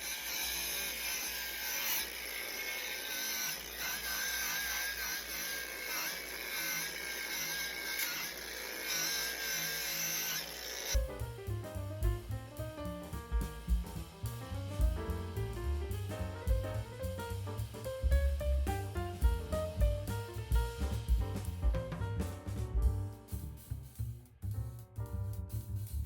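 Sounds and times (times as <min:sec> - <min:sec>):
power tool whining: 0:00.0 - 0:11.0
upbeat jazz music with drums: 0:11.0 - 0:26.0.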